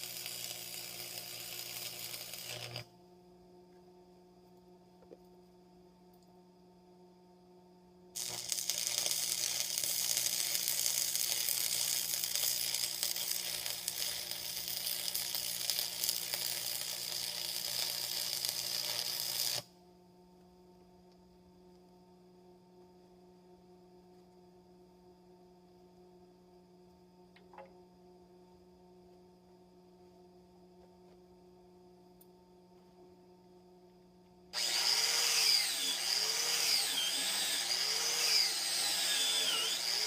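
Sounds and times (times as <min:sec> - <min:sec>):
arc welding: 0:00.0 - 0:02.9, 0:08.2 - 0:19.7, 0:34.6 - 0:40.0
low steady hum: 0:02.5 - 0:08.8.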